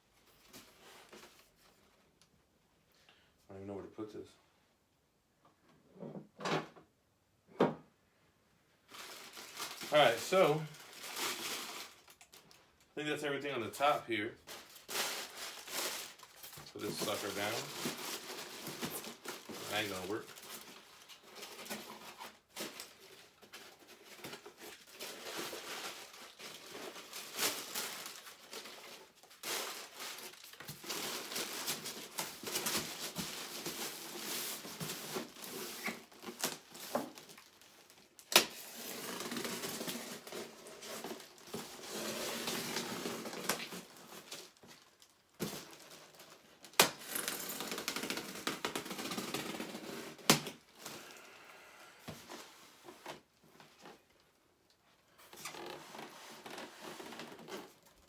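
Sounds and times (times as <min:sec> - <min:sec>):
packaging rustling and crinkling: 0:00.1 - 0:02.2, 0:08.8 - 0:13.0, 0:13.7 - 0:51.4, 0:52.0 - 0:58.0.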